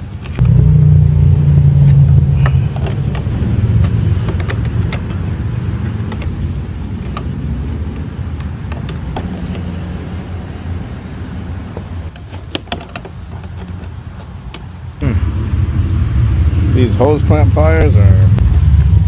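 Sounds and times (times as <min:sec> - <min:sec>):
car engine rumble: 0:00.0 - 0:19.0.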